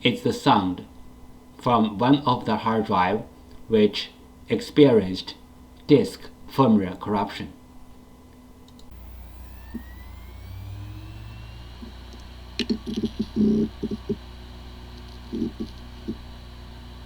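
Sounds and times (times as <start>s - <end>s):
hard drive whine and hum: 0.0s - 17.0s
hard drive clicks and chirps: 8.3s - 17.0s.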